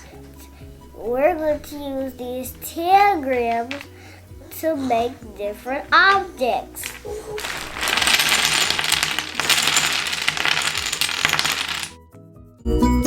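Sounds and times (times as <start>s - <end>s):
small hard pieces clattering: 6.8s - 12.0s.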